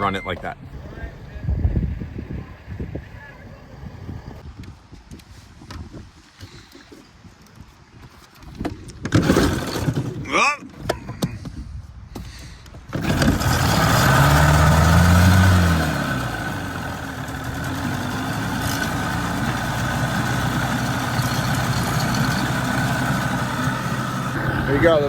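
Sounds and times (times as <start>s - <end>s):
engine starting and idling: 9.1s - 10.2s, 12.9s - 25.0s.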